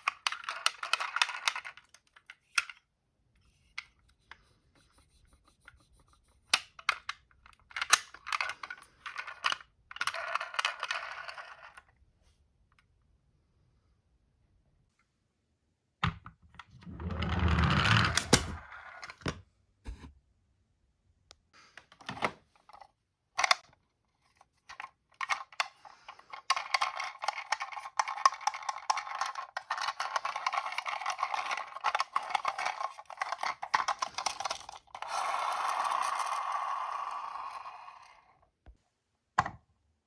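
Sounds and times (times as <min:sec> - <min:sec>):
toy car clicks and knocks: 0:00.0 - 0:02.8, 0:06.6 - 0:11.8, 0:16.8 - 0:18.7, 0:23.4 - 0:23.7, 0:24.7 - 0:38.3.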